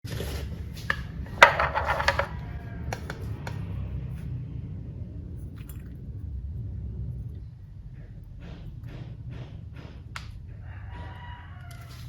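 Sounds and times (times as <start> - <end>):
low steady rumble: 0.2 - 12.0
kitchenware clinking and knocking: 1.3 - 2.4.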